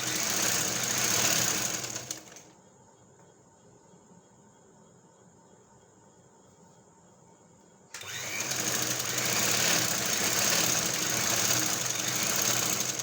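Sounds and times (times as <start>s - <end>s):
sewing machine running: 0.0s - 2.4s, 8.0s - 13.0s.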